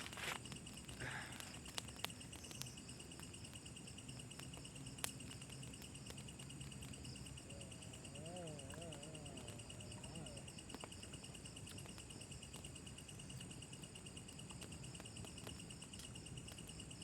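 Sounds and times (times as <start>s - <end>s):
crickets trilling: 0.0s - 17.0s.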